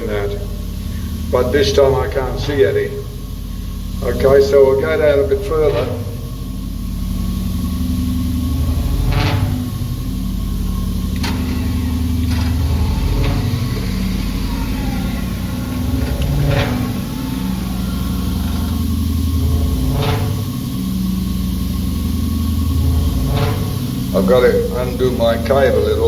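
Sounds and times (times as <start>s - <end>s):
engine running: 0.0s - 26.0s.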